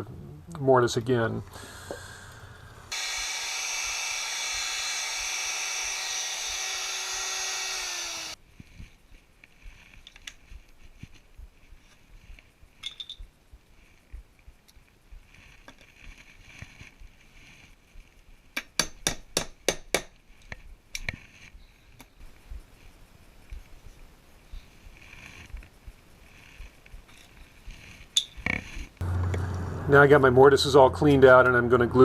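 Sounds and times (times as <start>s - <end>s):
handheld router running: 2.9s - 8.4s.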